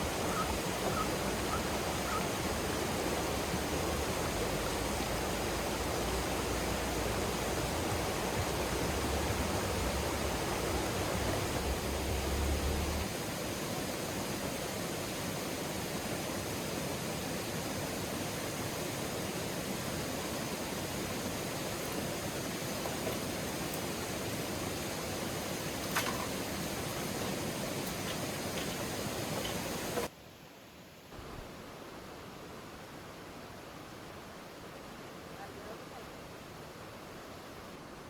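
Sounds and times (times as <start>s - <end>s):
outdoor rushing noise: 8.3s - 13.2s.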